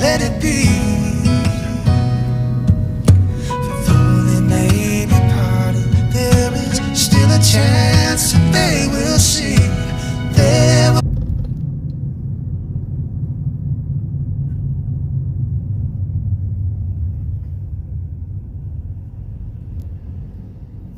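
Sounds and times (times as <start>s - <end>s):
music: 0.0s - 11.1s
steady low rumble: 0.0s - 20.9s.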